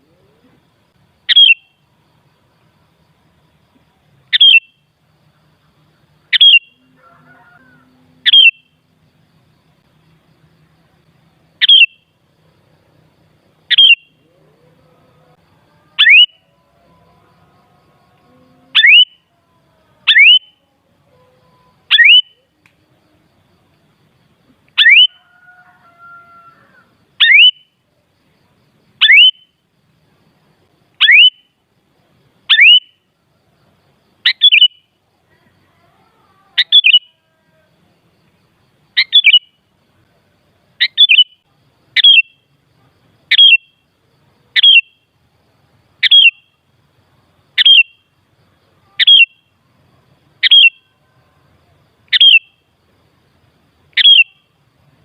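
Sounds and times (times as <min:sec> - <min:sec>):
bulbul sharp upward calls: 0:01.3 - 0:01.8, 0:04.3 - 0:04.9, 0:06.3 - 0:08.8, 0:11.6 - 0:12.1, 0:13.6 - 0:14.3, 0:16.0 - 0:16.4, 0:18.8 - 0:19.3, 0:20.1 - 0:20.6, 0:21.9 - 0:22.8, 0:24.7 - 0:27.8, 0:29.0 - 0:29.6, 0:31.0 - 0:31.5, 0:32.5 - 0:33.0, 0:34.2 - 0:34.9, 0:36.6 - 0:37.2, 0:39.0 - 0:39.6, 0:40.8 - 0:41.4, 0:42.0 - 0:42.5, 0:43.3 - 0:43.8, 0:44.6 - 0:45.1, 0:46.0 - 0:46.6, 0:47.6 - 0:48.0, 0:49.0 - 0:49.4, 0:50.4 - 0:50.9, 0:52.1 - 0:52.6, 0:54.0 - 0:54.5.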